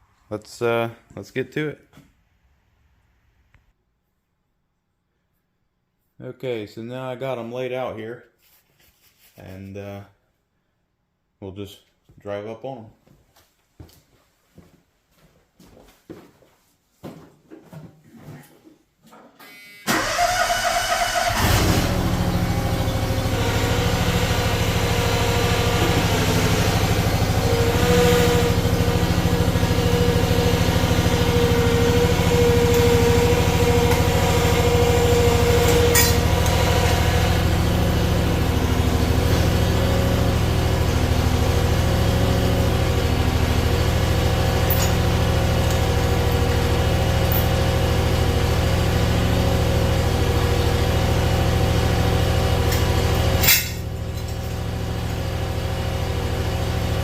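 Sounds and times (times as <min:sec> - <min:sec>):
petrol engine starting and running: 0:19.4 - 0:57.0.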